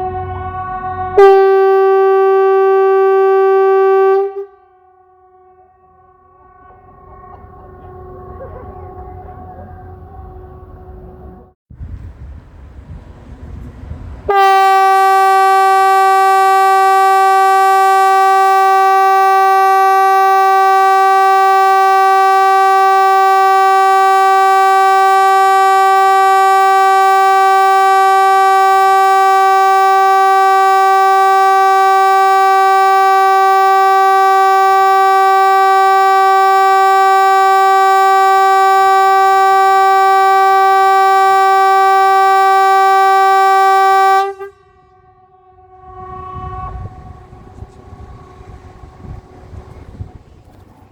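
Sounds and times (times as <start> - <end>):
warning horn long steady tone: 0.0 - 11.6, 13.2 - 50.9.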